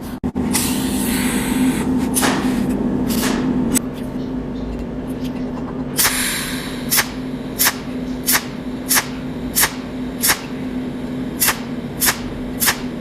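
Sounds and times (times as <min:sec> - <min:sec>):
electrical hum: 0:00.0 - 0:13.0
welder spark cracks: 0:06.0 - 0:10.5, 0:11.4 - 0:13.0.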